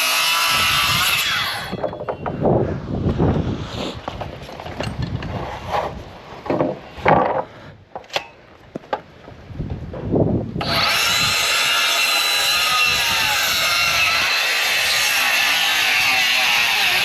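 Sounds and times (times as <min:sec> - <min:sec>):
wood scraping and knocking: 0:01.7 - 0:02.6, 0:04.0 - 0:08.1.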